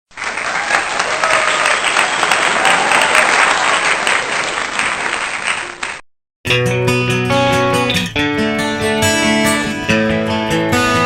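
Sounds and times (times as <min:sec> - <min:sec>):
crowd applauding: 0:00.1 - 0:06.0
strummed acoustic guitar music: 0:06.5 - 0:11.0.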